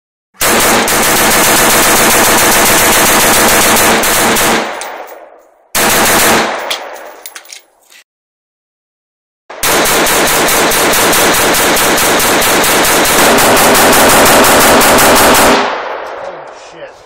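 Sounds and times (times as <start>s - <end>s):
rapid rifle fire: 0.4s - 5.0s, 5.8s - 6.7s, 9.5s - 16.0s.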